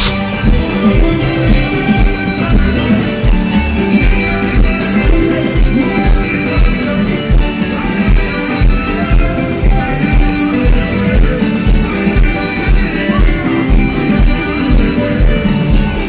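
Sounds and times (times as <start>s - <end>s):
live rumba band: 0.0s - 16.0s.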